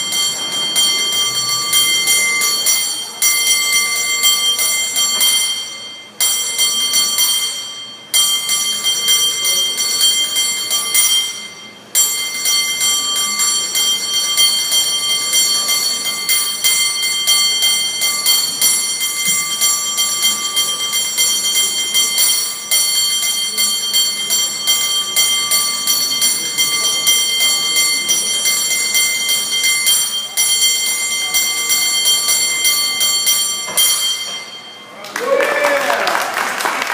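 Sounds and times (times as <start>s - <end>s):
cable car bell ringing rhythmically: 0.0s - 36.0s.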